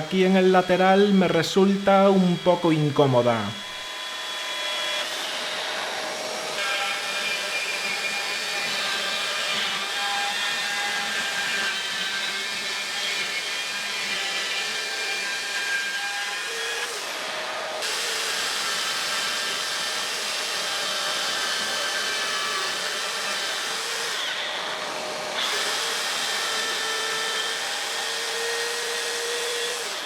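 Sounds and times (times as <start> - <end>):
dust extraction vacuum hiss: 0.0 - 4.0
power saw cutting wood: 0.0 - 30.0.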